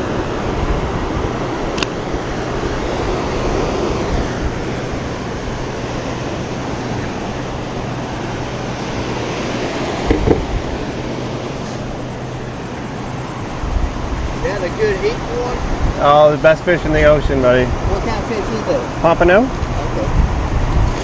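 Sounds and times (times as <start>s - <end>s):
wind on microphone: 0.0s - 21.0s
low thumps: 10.0s - 10.8s.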